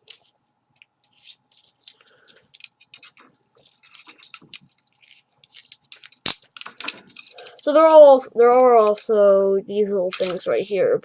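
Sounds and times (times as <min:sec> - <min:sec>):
chain rattling: 0:01.5 - 0:07.7.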